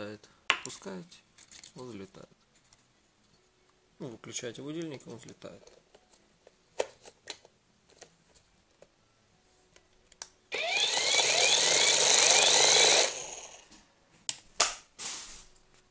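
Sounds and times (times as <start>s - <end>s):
small electric motor whirring: 10.5s - 13.6s.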